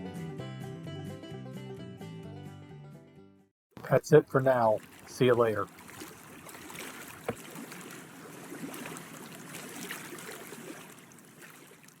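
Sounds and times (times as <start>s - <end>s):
small waves lapping against hull: 3.8s - 12.0s.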